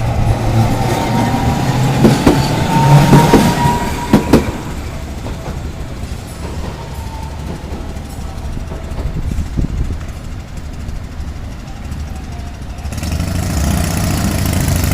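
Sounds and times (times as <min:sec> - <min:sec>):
vehicle engines humming: 0:09.8 - 0:14.9.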